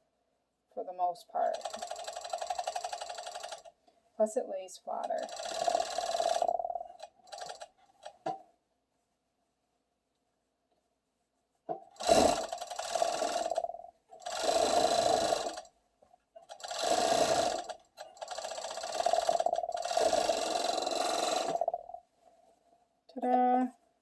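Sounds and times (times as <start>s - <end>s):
overlock sewing machine stitching: 1.4s - 3.7s, 5.1s - 8.2s, 12.0s - 15.7s, 16.4s - 21.8s.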